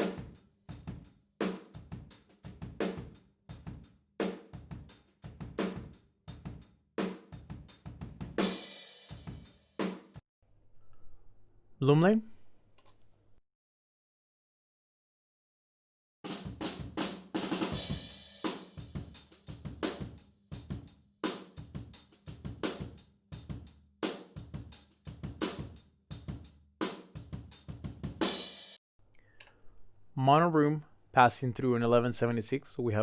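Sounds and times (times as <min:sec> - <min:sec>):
drum kit playing: 0:00.0 - 0:10.2, 0:16.3 - 0:28.8.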